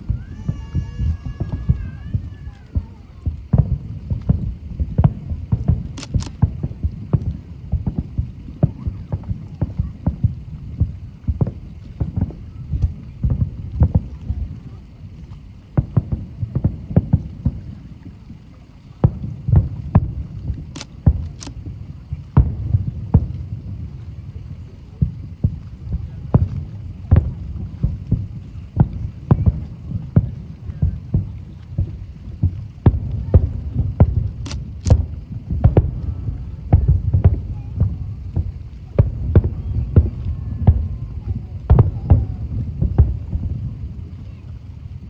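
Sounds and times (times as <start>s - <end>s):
fireworks booming: 0.0s - 45.0s
low rumble: 0.0s - 45.0s.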